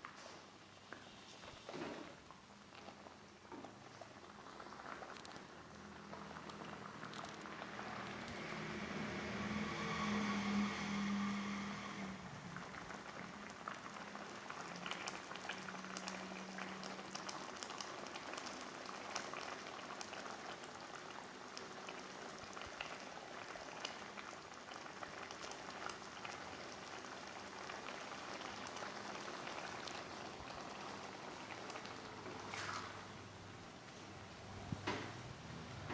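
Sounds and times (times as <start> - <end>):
sauce bubbling and crackling in oil: 1.5 - 33.6.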